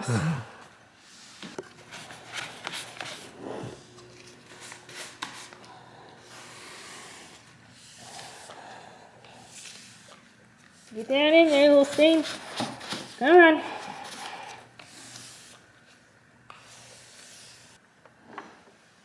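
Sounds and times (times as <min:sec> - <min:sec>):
applicator rubbing on wooden floor: 0:01.1 - 0:08.6, 0:09.4 - 0:15.6.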